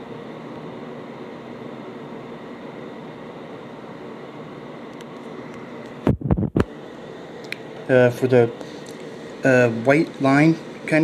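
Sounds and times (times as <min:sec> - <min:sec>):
faint steady hum: 0:00.0 - 0:11.0
steady hiss: 0:06.7 - 0:11.0.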